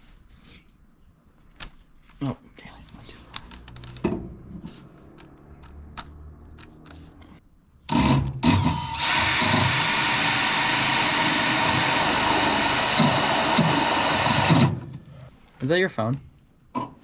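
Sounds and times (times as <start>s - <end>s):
power drill running: 7.9s - 14.8s.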